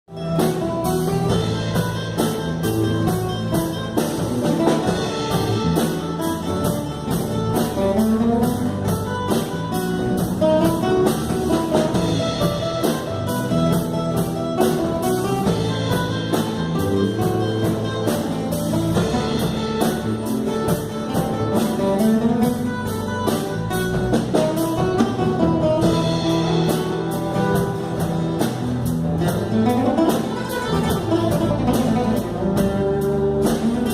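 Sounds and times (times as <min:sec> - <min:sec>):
acoustic guitars playing over a beat: 0:00.1 - 0:33.9.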